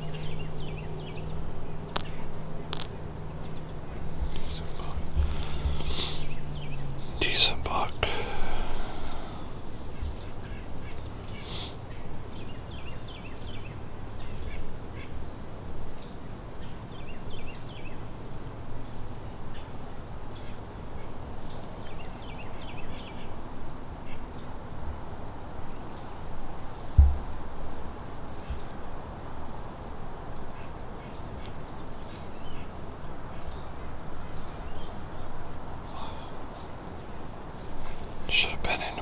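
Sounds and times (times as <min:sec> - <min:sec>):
birds calling: 0:00.0 - 0:15.2, 0:19.6 - 0:39.0
low thump: 0:27.0 - 0:27.4.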